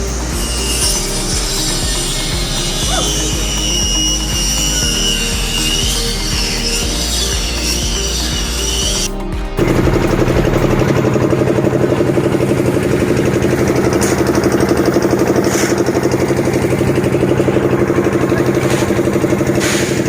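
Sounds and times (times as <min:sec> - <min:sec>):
engine idling: 0:00.0 - 0:20.0.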